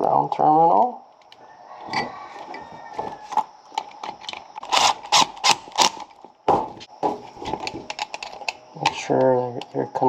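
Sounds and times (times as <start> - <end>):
screwdriver clicking and scraping: 3.3 - 6.2, 7.5 - 9.8.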